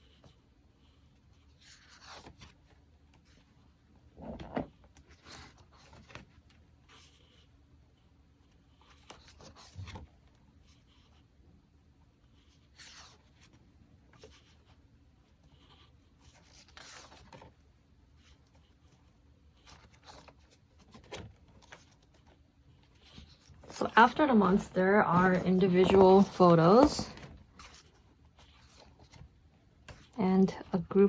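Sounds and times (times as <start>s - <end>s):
calendar pages turning: 15.5s - 17.6s, 19.6s - 31.0s.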